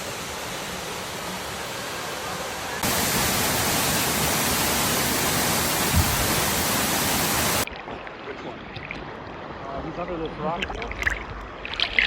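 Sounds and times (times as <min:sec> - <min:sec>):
waterfall rushing: 0:00.0 - 0:07.7
low thump: 0:05.9 - 0:06.3.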